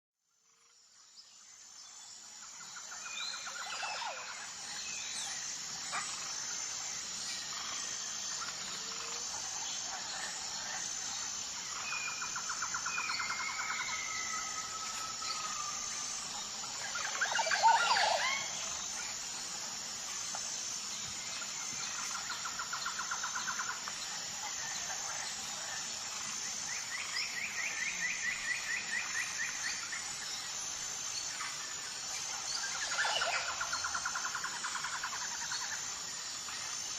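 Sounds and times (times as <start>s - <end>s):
pulsing insect chorus: 0.3s - 36.9s
birds calling with trills: 11.5s - 19.2s.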